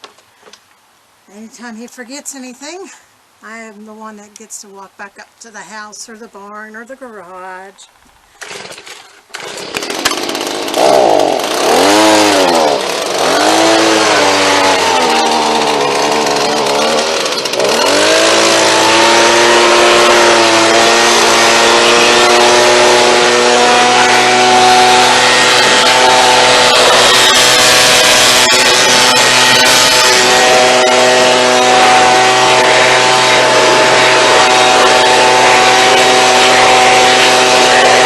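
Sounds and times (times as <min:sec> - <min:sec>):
leaf blower revving: 0:08.4 - 0:38.0.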